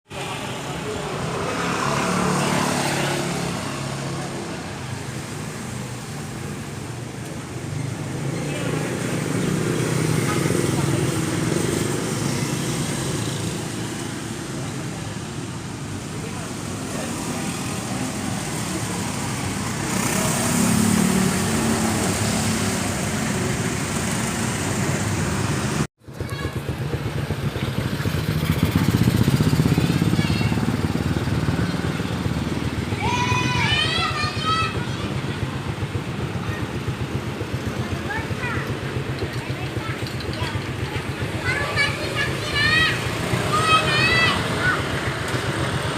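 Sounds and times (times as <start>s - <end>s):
small engine running: 22.2s - 33.2s.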